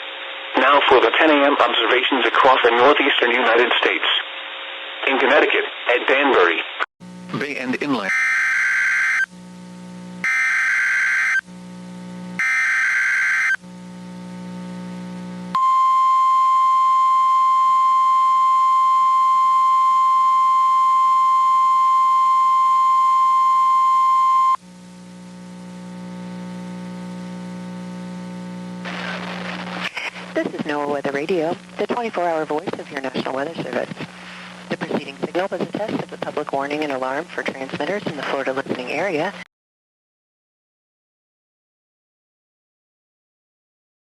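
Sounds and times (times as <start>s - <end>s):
low radio hum: 0.5s - 8.2s, 9.3s - 10.3s, 11.4s - 12.6s, 13.6s - 18.5s, 22.0s - 39.5s
steady warning alarm tone: 8.1s - 9.3s, 10.2s - 11.4s, 12.4s - 13.6s.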